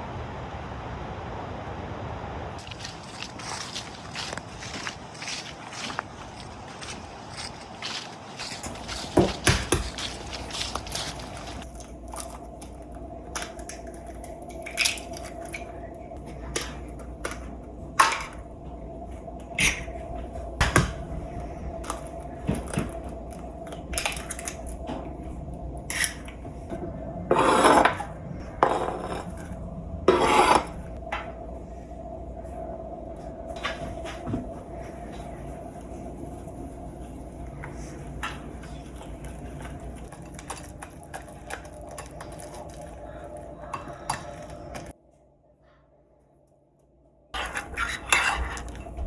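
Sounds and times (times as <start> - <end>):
faint steady hum: 0.0 - 49.0
dishes and utensils clinking: 37.6 - 44.9, 47.4 - 49.0.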